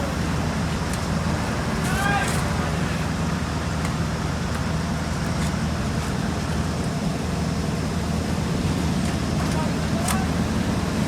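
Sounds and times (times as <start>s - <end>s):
paving machinery engine hum: 0.0s - 11.0s.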